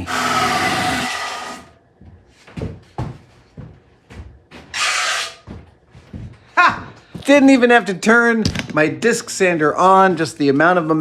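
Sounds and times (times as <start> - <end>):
wood sanding rasp: 0.0 - 1.7.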